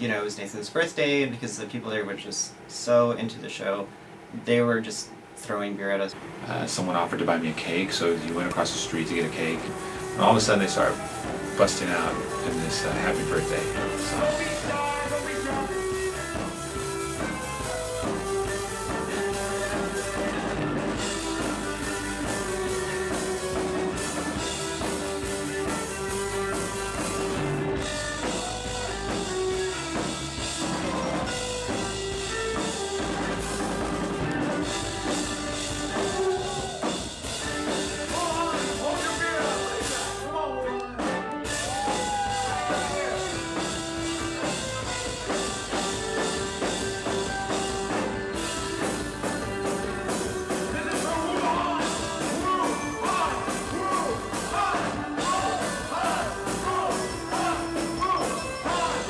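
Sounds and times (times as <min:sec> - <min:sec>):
drum kit: 0:04.4 - 0:40.4, 0:41.0 - 0:59.0
rock band music: 0:06.2 - 0:59.0
people singing: 0:54.3 - 0:59.0.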